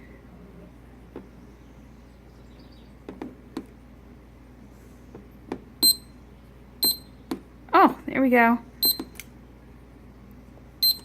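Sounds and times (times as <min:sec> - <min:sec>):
short high timer beep: 0:06.8 - 0:07.1.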